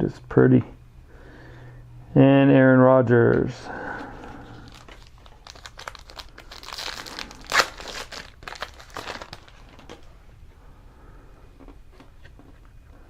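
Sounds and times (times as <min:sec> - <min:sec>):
foil wrapper crinkling and tearing: 0:04.5 - 0:10.1.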